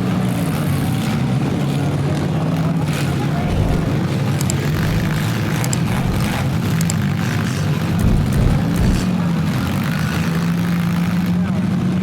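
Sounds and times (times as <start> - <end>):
car engines droning: 0.0 - 9.5
faint sharp clicks: 3.6 - 7.0.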